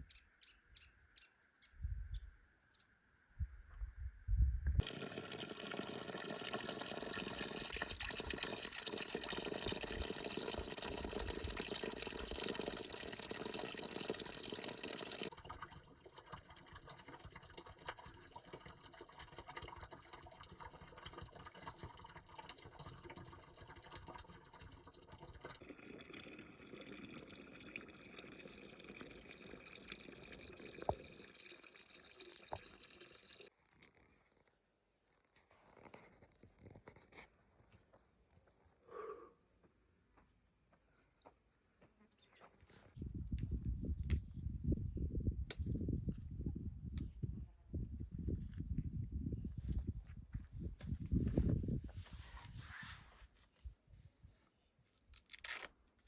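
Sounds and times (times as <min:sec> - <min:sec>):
water pouring and splashing: 0:04.8 - 0:33.5, 0:50.5 - 0:53.2.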